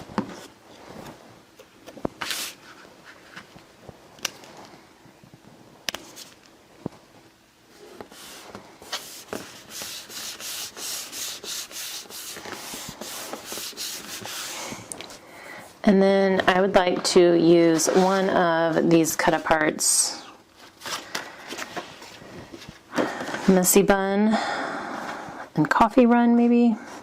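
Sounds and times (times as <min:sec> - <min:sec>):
paper rubbing strokes: 0:07.8 - 0:14.8.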